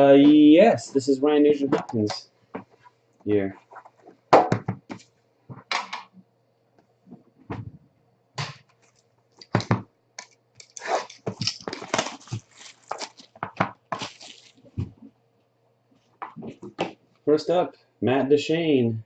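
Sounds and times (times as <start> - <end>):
faint electrical hum: 0.0 - 19.0
cards and plastic sleeves rustling: 10.6 - 15.0.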